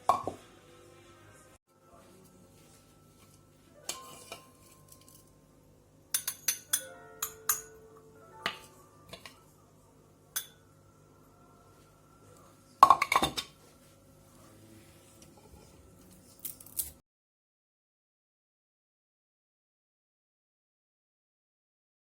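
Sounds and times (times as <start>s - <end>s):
utensils clinking against dishes: 2.2s - 5.4s, 6.1s - 7.8s, 8.4s - 9.4s, 10.3s - 10.6s
dishes clattering: 3.2s - 5.3s, 6.1s - 7.8s, 12.8s - 13.6s.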